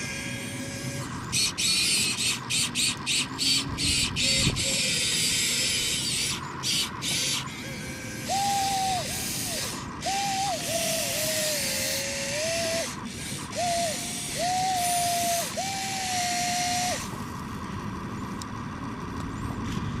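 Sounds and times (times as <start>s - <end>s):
electric gear motors whining: 0.0s - 19.9s
faint steady hum: 0.0s - 20.0s.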